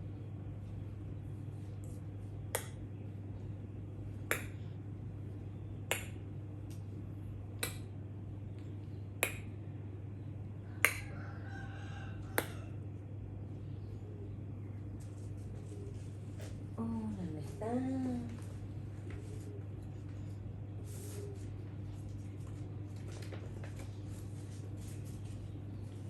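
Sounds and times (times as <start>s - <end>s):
steady low hum: 0.0s - 26.0s
person snapping clicks: 2.5s - 2.8s, 4.3s - 4.6s, 5.9s - 6.8s, 7.6s - 7.9s, 9.2s - 9.5s, 10.8s - 11.1s, 12.4s - 12.6s.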